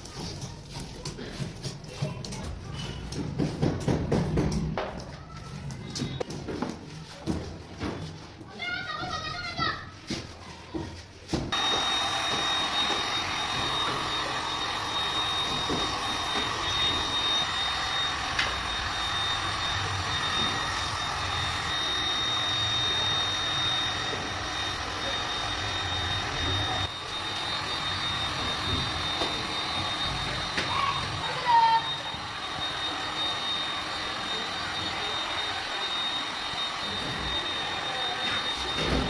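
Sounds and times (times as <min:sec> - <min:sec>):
hot-air blower rushing hiss: 0:11.5 - 0:39.0.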